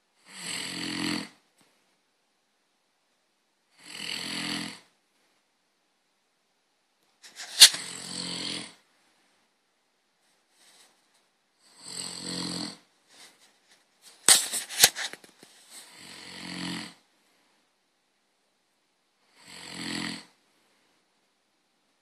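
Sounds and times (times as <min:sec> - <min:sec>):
person snoring: 0:00.2 - 0:01.4, 0:03.8 - 0:04.8, 0:07.6 - 0:08.8, 0:11.7 - 0:12.9, 0:15.8 - 0:17.0, 0:19.3 - 0:20.4.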